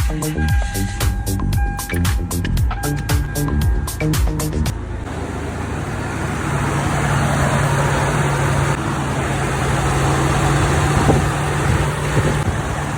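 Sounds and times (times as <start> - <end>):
car engine running: 3.8 - 12.9.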